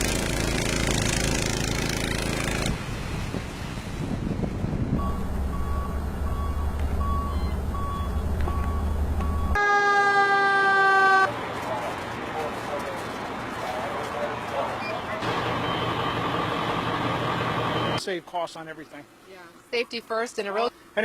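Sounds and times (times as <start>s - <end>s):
heavy truck engine running: 0.0s - 9.6s, 11.3s - 18.0s
road noise: 0.0s - 21.0s
reversing alarm beeping: 5.0s - 10.8s, 14.8s - 18.0s
siren-like horn: 9.5s - 11.3s.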